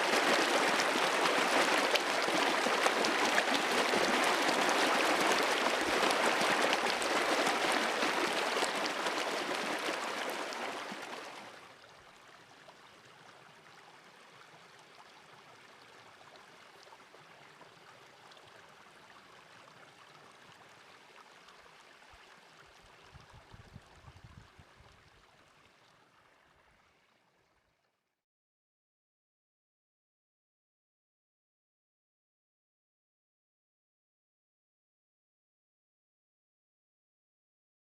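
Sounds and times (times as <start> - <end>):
stream water rushing: 0.0 - 11.6.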